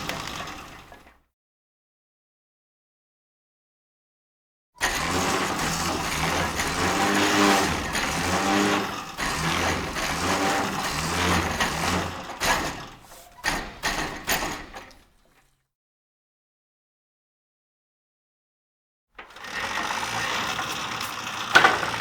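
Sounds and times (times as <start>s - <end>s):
fire truck engine running: 20.0s - 22.0s.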